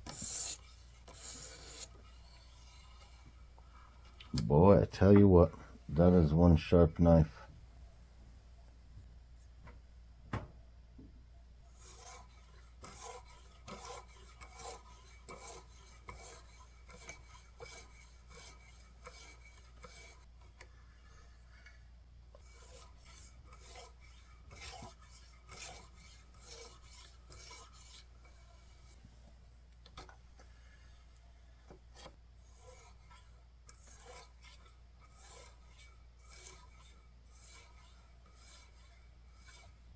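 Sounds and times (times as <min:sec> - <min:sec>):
knife blade rasping on sharpener: 0:00.1 - 0:03.1, 0:11.8 - 0:20.3, 0:22.4 - 0:28.4, 0:32.4 - 0:39.8.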